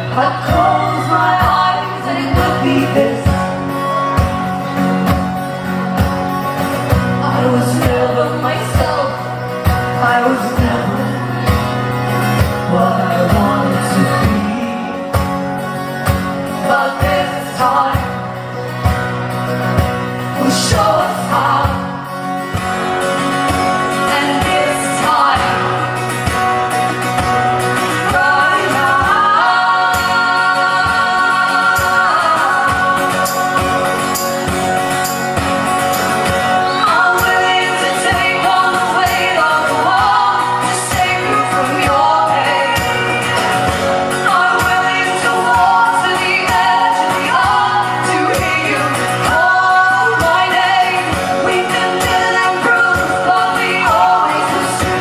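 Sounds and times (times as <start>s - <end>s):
woman singing: 0.0s - 3.6s, 7.0s - 15.3s, 16.5s - 18.4s, 20.3s - 22.0s, 23.8s - 26.0s, 27.7s - 34.4s, 36.3s - 55.0s
strummed acoustic guitar: 0.0s - 55.0s.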